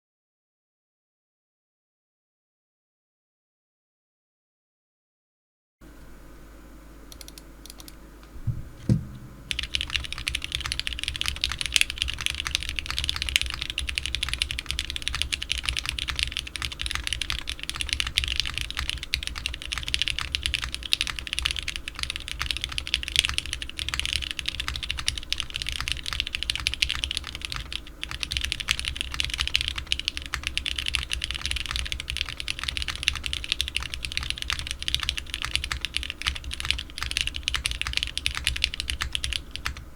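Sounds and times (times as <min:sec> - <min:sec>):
mechanical keyboard typing: 0:07.1 - 0:39.9
low thump: 0:08.4 - 0:09.5.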